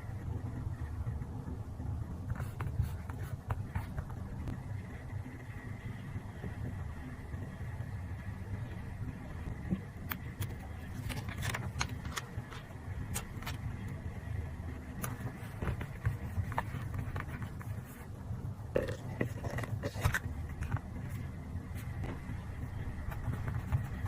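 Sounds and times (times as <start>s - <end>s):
steady low hum: 0.0s - 24.0s
paper rustling and tapping: 9.7s - 13.6s, 15.0s - 18.0s, 19.2s - 21.2s, 23.0s - 24.0s.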